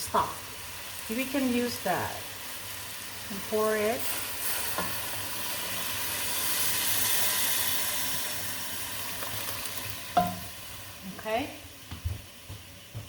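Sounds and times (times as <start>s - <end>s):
frying hiss and sizzle: 0.0s - 13.0s
stock pouring into pot: 4.0s - 10.5s.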